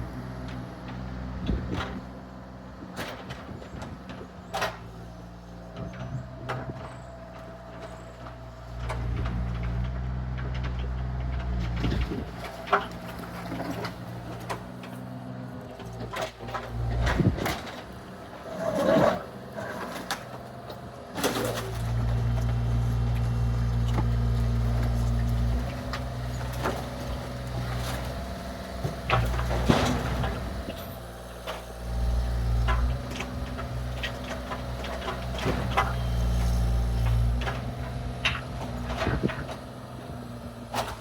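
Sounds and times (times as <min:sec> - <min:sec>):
excavator diesel engine: 0:00.0 - 0:41.0
debris crashing and clattering: 0:29.0 - 0:30.8.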